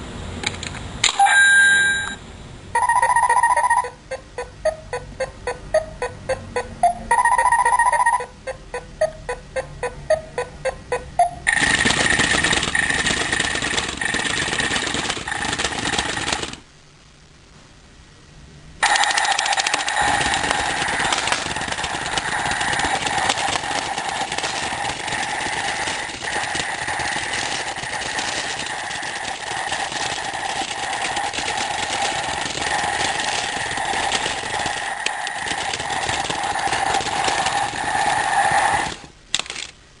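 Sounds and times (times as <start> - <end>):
alarm clock buzzing: 1.2 - 2.2, 2.8 - 3.9, 6.9 - 8.3, 18.8 - 38.7.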